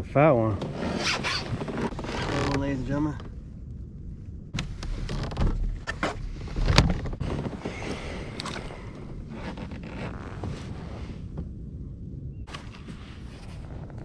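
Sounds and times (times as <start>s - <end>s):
wind rumble on microphone: 0.0s - 14.0s
gear knocking and rustling on kayak: 0.6s - 3.4s, 4.6s - 11.6s.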